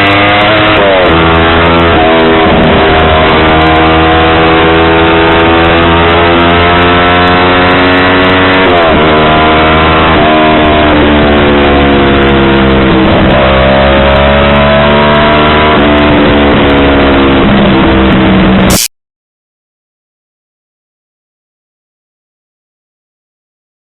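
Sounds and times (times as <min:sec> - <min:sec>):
motorcycle engine revving: 0:00.0 - 0:18.9.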